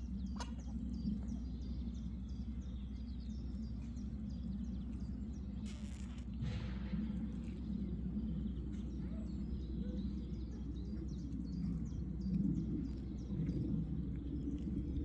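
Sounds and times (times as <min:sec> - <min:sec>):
steady low rumble: 0:10.9 - 0:15.0.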